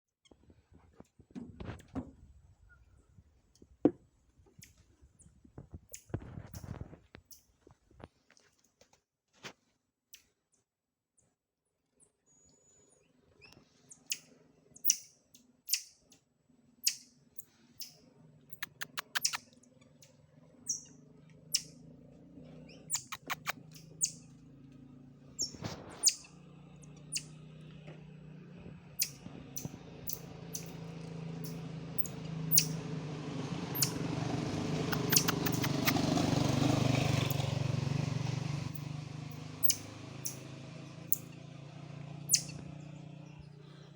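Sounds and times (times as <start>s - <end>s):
small animal chirping: 5.9s - 7.5s, 13.4s - 16.0s, 16.8s - 21.8s, 22.6s - 24.4s, 25.4s - 26.4s, 27.1s - 27.4s, 29.0s - 30.8s, 31.4s - 32.8s, 33.8s - 34.0s, 34.8s - 36.1s, 39.6s - 41.3s, 42.3s - 42.6s.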